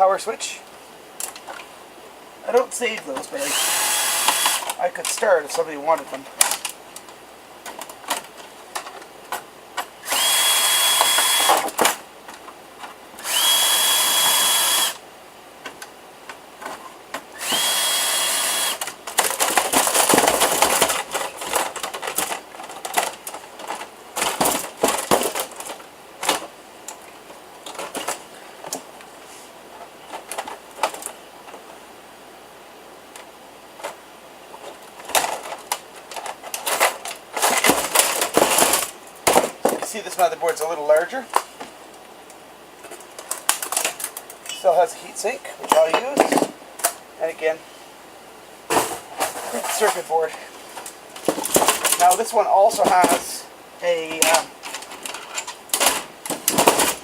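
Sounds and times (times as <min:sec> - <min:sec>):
power screwdriver whine: 0:03.4 - 0:04.8, 0:10.0 - 0:11.7, 0:13.2 - 0:15.0, 0:17.4 - 0:18.8
clicks and metallic clatter: 0:54.2 - 0:57.0.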